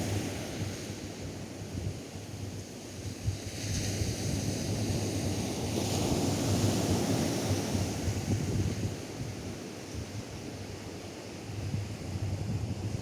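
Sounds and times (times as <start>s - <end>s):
wind buffeting microphone: 6.3s - 10.8s, 11.5s - 13.0s.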